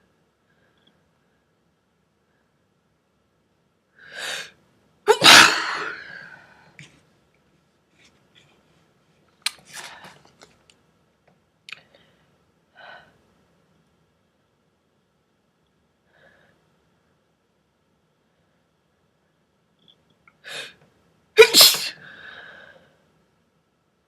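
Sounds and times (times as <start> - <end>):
quiet breaths: 0.0 - 3.0, 11.6 - 14.6, 15.5 - 21.0, 22.0 - 23.4
person sneezing: 5.1 - 6.4, 21.4 - 22.1.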